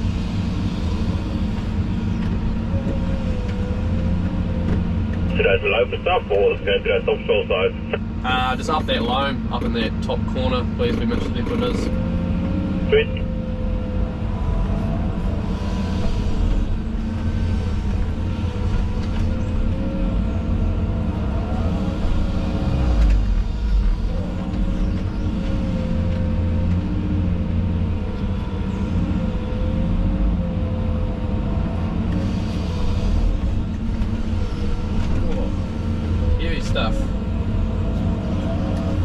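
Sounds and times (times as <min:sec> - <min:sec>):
excavator diesel engine under load: 0:00.0 - 0:39.0.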